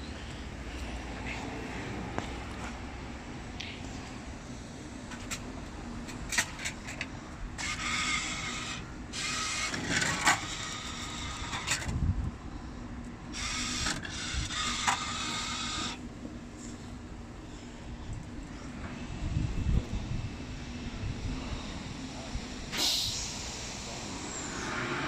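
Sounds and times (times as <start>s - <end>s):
car wash machine hum: 12.4s - 25.0s.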